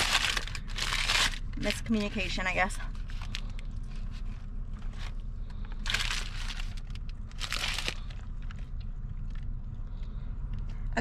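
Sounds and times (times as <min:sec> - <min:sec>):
wrapper crinkling: 0:00.0 - 0:05.2, 0:05.8 - 0:08.7
steady low hum: 0:00.0 - 0:11.0.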